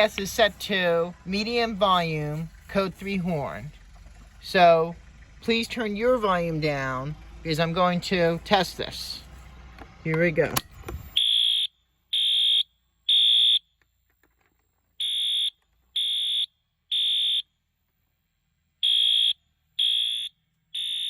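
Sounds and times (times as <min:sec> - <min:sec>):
fire alarm horn blasts: 0:11.2 - 0:13.6, 0:15.0 - 0:17.4, 0:18.8 - 0:21.0.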